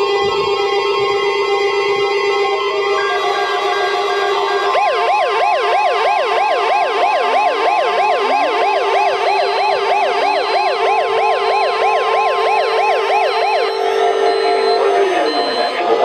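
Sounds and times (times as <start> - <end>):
electronic yelp siren: 0.0 - 16.0
steady held tones: 8.2 - 16.0.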